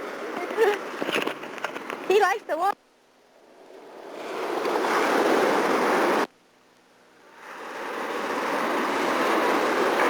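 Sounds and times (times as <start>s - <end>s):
ocean surf: 3.4s - 6.3s, 7.1s - 10.0s.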